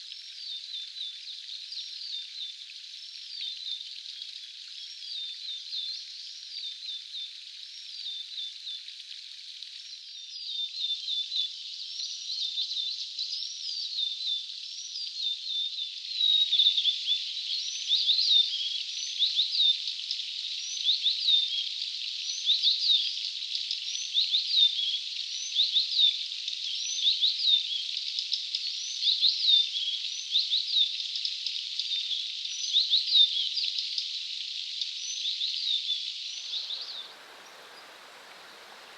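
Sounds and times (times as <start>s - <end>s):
steady hiss: 36.3s - 38.9s.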